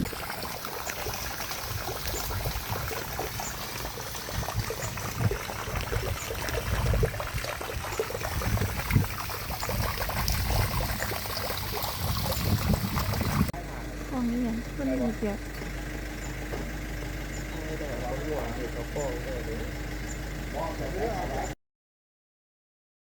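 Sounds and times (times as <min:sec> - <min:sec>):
water trickling and sloshing: 0:00.0 - 0:13.5
soft low thumps in water: 0:01.5 - 0:13.5.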